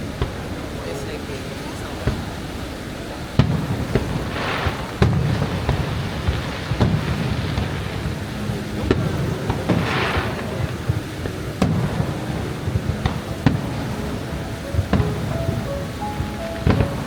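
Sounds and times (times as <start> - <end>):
crackling hiss: 0.0 - 17.0
fireworks bangs: 0.0 - 17.0.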